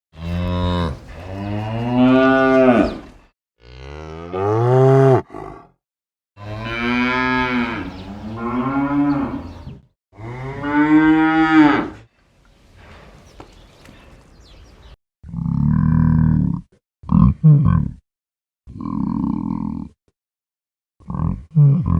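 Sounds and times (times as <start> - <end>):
cattle mooing: 0.2 - 5.6, 6.4 - 12.0.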